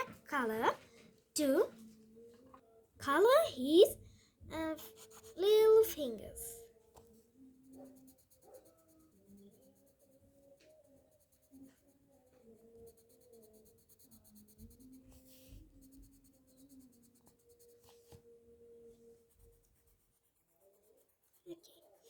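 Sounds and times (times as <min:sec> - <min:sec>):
pencil scratching on paper: 0:04.6 - 0:06.4, 0:07.6 - 0:18.3, 0:19.2 - 0:22.0.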